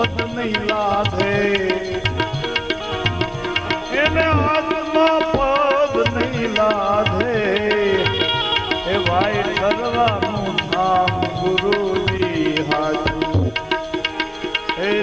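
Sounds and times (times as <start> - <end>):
tabla steady beat: 0.0 - 15.0.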